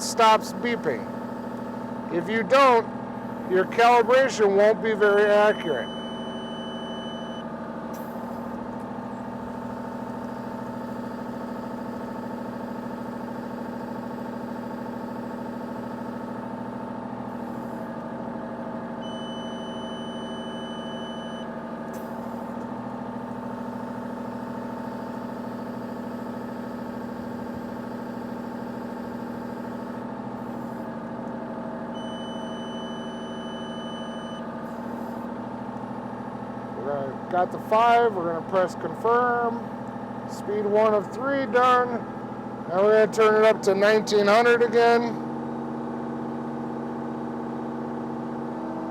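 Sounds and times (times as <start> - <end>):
diesel engine running: 0.0 - 48.9
high steady beep: 3.5 - 7.5, 19.0 - 21.5, 32.0 - 34.5.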